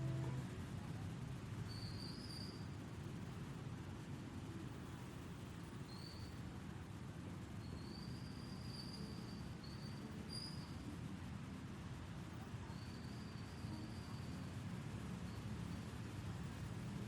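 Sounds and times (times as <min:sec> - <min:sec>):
steady low rumble: 0:00.0 - 0:00.6.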